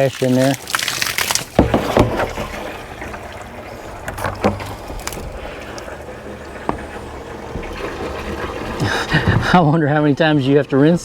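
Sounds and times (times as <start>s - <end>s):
water splashing from hose: 0.0s - 11.0s
hose knocking: 1.3s - 11.0s
steady low rumble: 2.4s - 11.0s.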